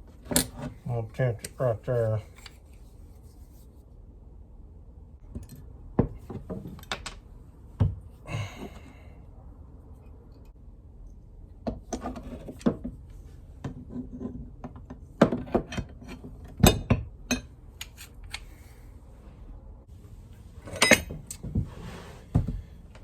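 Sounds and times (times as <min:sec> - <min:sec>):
metal tools clinking: 0:20.6 - 0:21.4.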